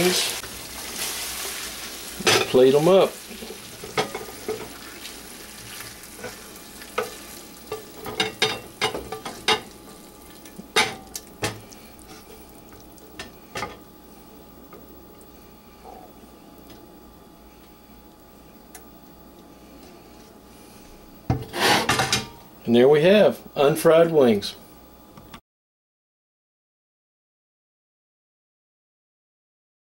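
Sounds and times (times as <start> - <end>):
pan sizzling: 0.0 - 17.1.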